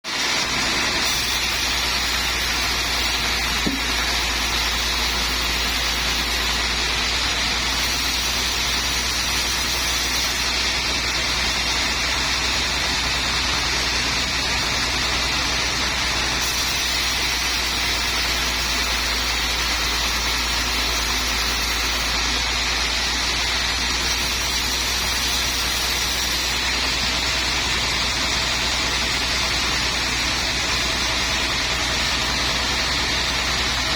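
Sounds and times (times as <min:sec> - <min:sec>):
sawmill machinery running: 0:00.0 - 0:33.9.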